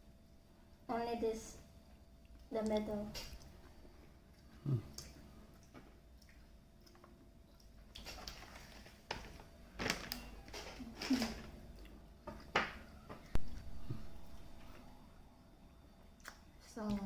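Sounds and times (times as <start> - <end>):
packaging crinkling and tapping: 8.0 - 11.5.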